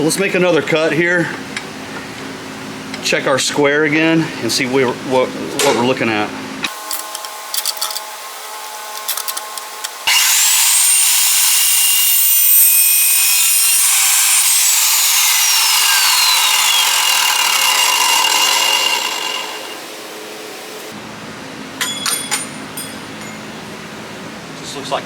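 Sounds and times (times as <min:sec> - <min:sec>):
chop saw cutting steel: 0:10.0 - 0:21.0.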